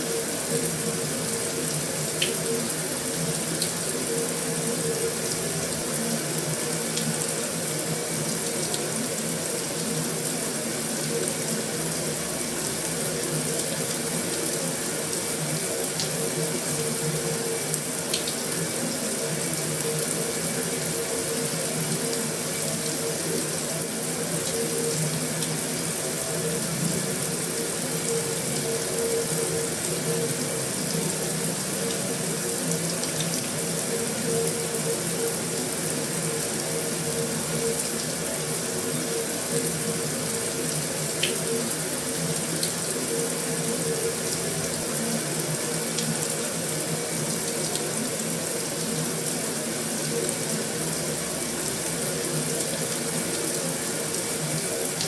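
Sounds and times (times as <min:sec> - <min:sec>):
heavy rain on a metal roof: 0:00.1 - 0:55.0.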